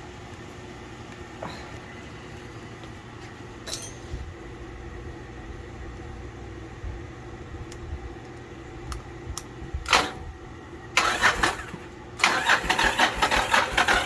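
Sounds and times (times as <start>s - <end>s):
motorcycle starter cranking: 11.0s - 14.0s.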